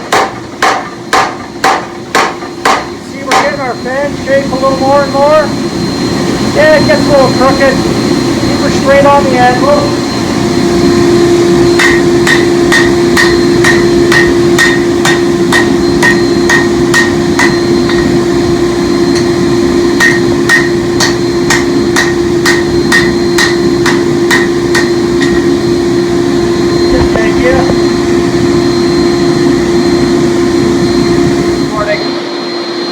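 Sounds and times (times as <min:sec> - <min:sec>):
hammer blows on steel over anvil: 0:00.0 - 0:03.7, 0:11.7 - 0:18.2, 0:20.0 - 0:25.6
steady hum: 0:00.0 - 0:32.9.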